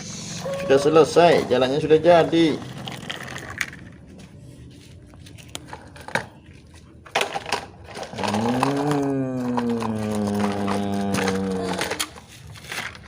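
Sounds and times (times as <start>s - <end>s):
plastic toy pieces clicking: 7.2s - 12.2s.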